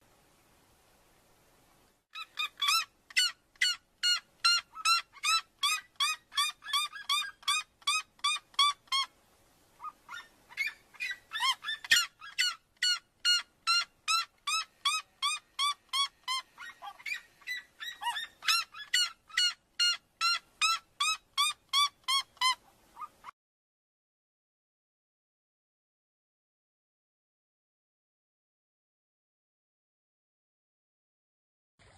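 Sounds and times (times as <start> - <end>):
bird yelping call: 2.2 - 9.1, 9.8 - 23.3.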